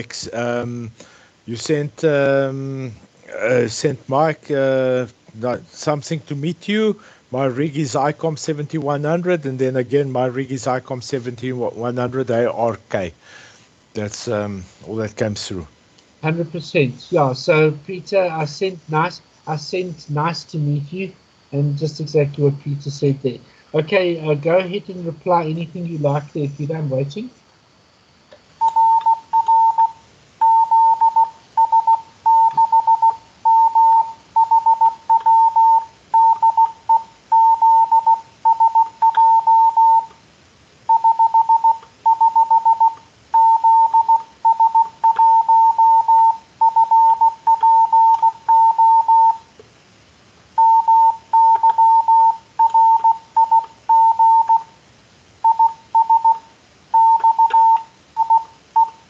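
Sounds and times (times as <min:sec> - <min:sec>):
morse code beeps: 0:28.6 - 0:40.2, 0:40.9 - 0:49.5, 0:50.6 - 0:54.7, 0:55.4 - 0:59.0.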